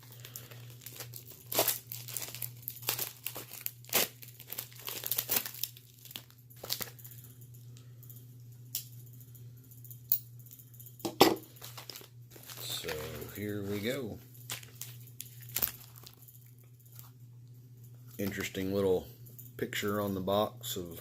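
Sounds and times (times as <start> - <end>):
packaging crinkling and tearing: 0.0 - 7.2, 11.5 - 17.2.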